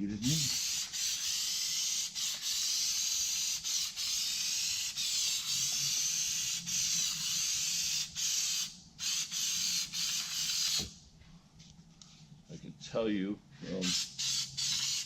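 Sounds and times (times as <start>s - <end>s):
spray adhesive hissing: 0.2s - 11.0s, 13.8s - 15.0s.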